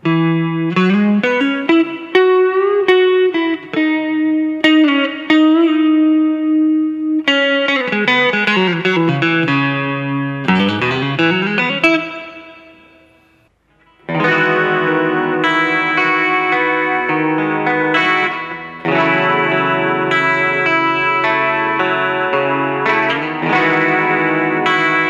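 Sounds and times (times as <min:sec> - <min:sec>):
electric guitar lead line: 0:00.0 - 0:25.0.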